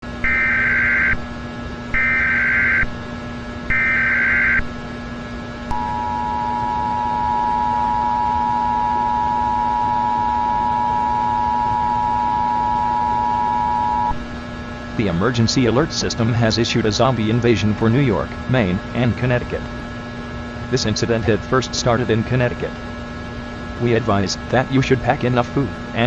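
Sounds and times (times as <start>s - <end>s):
low constant hum: 0.0s - 26.0s
warbling data tones: 2.0s - 2.9s, 3.7s - 4.6s, 5.7s - 14.2s
two-tone attention signal: 5.7s - 14.2s.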